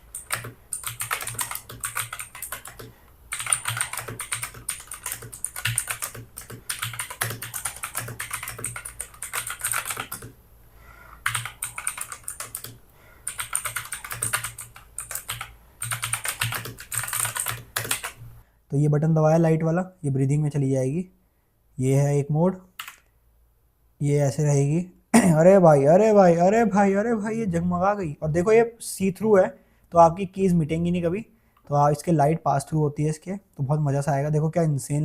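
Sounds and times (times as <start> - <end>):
clicky keyboard typing: 0.0 - 10.4, 11.2 - 18.3, 22.8 - 23.1.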